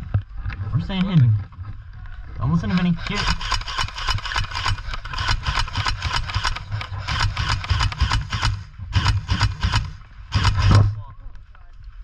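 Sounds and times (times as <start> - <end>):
airsoft guns firing bursts: 2.6 - 10.9.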